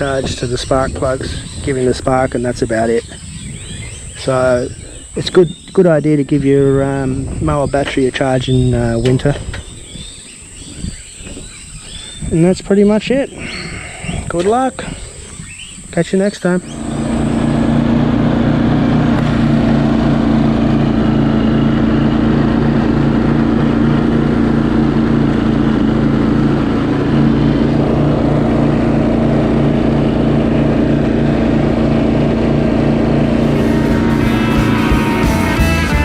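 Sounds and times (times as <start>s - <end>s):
ride-on mower engine running: 16.6s - 36.0s.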